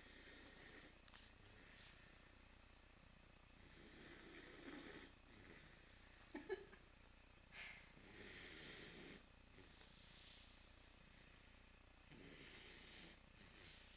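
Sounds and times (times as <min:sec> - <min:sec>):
dog snoring: 0:00.0 - 0:02.3, 0:03.6 - 0:06.3, 0:08.0 - 0:13.9.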